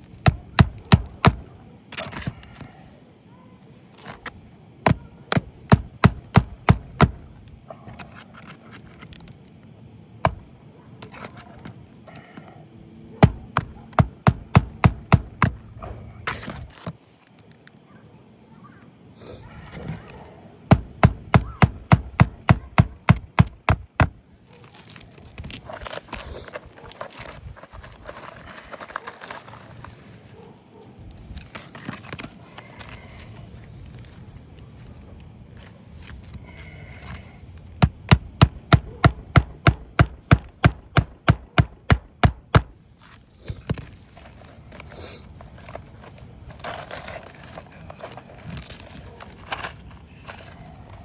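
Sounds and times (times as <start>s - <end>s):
hammer driving a nail: 0.1s - 2.6s, 4.9s - 7.3s, 10.2s - 10.4s, 13.2s - 15.7s, 20.7s - 24.2s, 37.7s - 42.8s.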